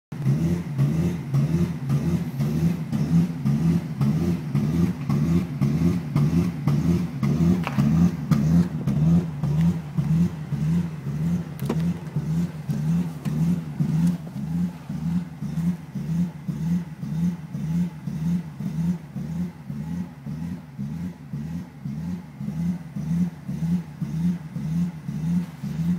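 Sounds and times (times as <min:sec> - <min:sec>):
car engine idling roughly: 0:00.2 - 0:25.9.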